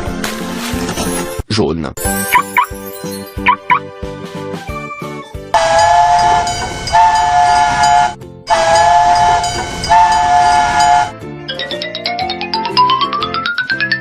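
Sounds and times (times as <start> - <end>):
children's music with a beat: 2.0 - 5.5, 11.2 - 14.0
train whistle chord blasts: 5.5 - 11.2.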